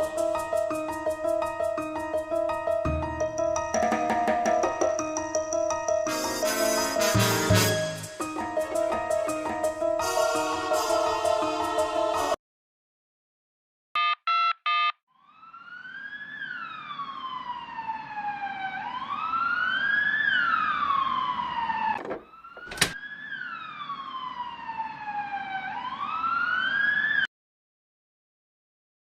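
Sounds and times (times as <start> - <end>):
siren wailing: 15.2 - 27.3.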